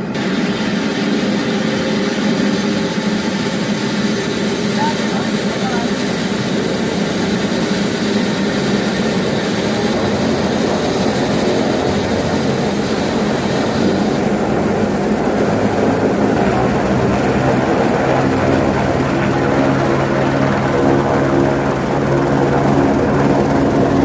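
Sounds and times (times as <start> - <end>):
turbine high hiss: 0.0 - 18.4
helicopter rotor drone: 0.0 - 24.0.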